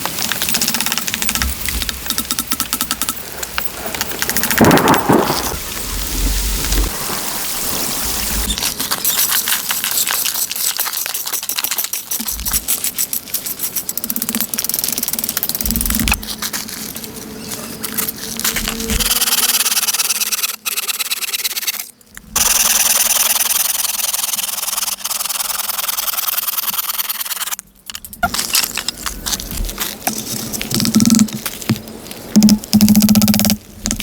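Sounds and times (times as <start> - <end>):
rasping wood-working noise: 18.4 - 27.6.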